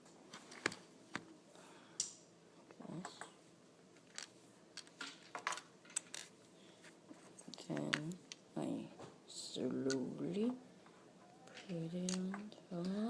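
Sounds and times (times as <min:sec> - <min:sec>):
plastic bricks clicking together: 0:04.1 - 0:06.3, 0:09.8 - 0:10.0, 0:11.4 - 0:12.5.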